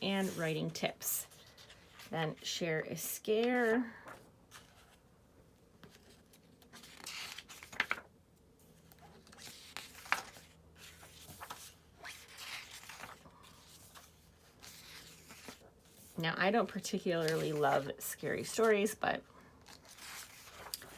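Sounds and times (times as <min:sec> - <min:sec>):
book pages turning: 0:03.2 - 0:05.0, 0:05.8 - 0:08.1, 0:08.7 - 0:19.0, 0:19.6 - 0:20.9.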